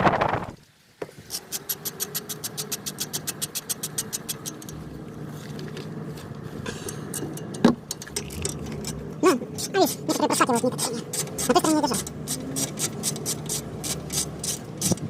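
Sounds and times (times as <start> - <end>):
hand ratchet clicking: 1.3 - 4.8, 9.6 - 15.0
low hum: 3.8 - 14.8.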